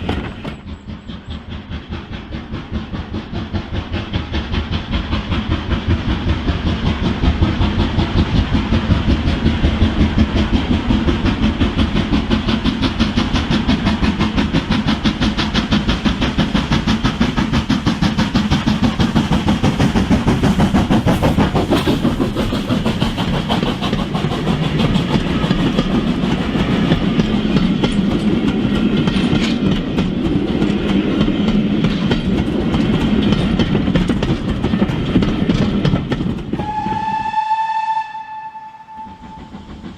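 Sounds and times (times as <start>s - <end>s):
model train clicking on track: 0.0s - 39.9s.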